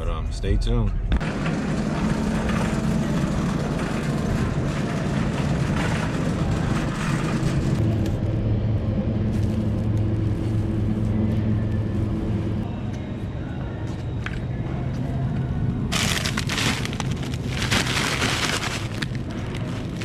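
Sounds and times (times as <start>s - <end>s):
tyre and road noise: 1.2s - 12.6s, 15.9s - 20.0s.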